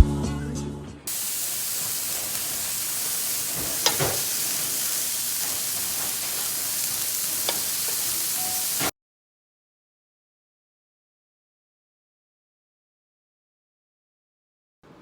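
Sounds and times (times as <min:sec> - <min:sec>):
steady hissing noise: 0:01.1 - 0:08.9.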